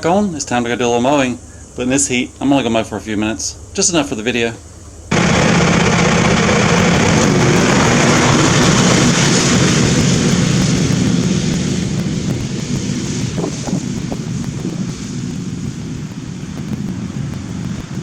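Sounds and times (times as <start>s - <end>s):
mower engine running: 5.1s - 14.7s.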